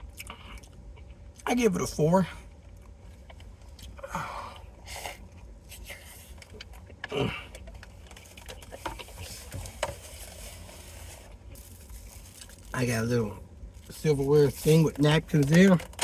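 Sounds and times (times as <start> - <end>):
chewing and mouth sounds: 0.0 - 1.5, 5.0 - 9.6
low steady hum: 0.0 - 16.0.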